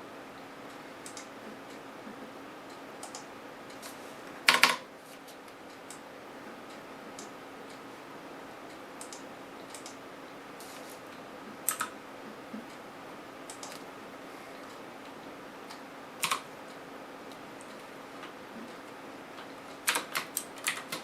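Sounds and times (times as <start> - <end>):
faint steady hum: 0.0 - 21.0
keyboard and mouse clicks: 1.0 - 1.3, 3.0 - 4.8, 9.0 - 10.0, 11.6 - 11.9, 13.5 - 13.8, 15.7 - 16.5, 19.4 - 21.0.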